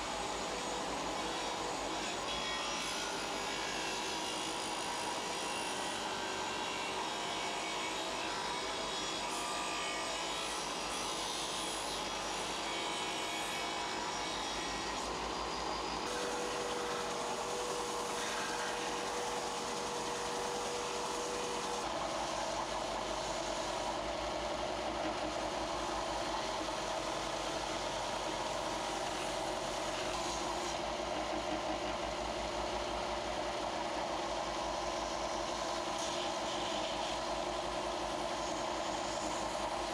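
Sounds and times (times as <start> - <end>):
power tool grinding: 0.0 - 31.5.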